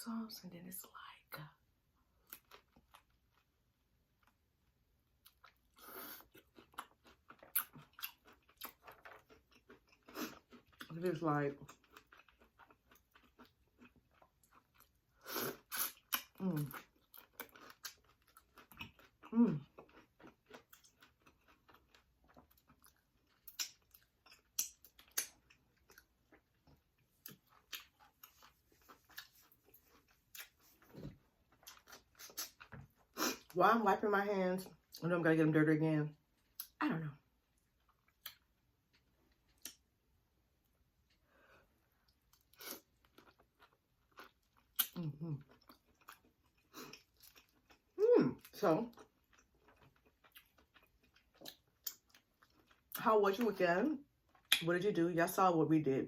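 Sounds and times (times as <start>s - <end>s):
wet chewing and lip smacks: 5.2s - 10.9s, 11.6s - 33.5s, 37.5s - 40.0s, 42.0s - 53.0s, 54.2s - 54.7s.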